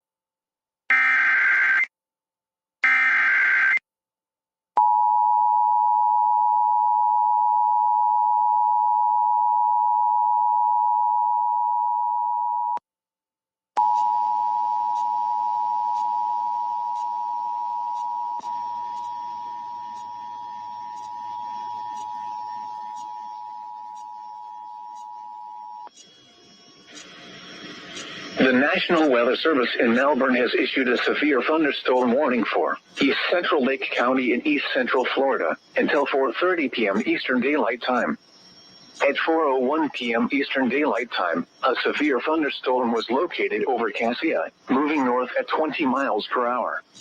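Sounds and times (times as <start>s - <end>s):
screeching digital data bursts: 13.8s - 47.0s
static hiss: 25.9s - 47.0s.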